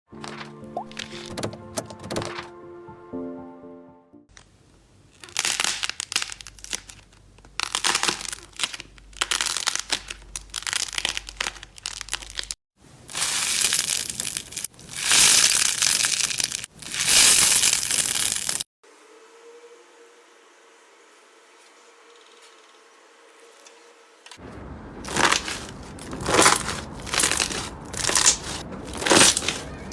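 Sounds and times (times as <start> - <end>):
slime squeezed by hand crackling: 7.6 - 18.6, 25.1 - 29.9.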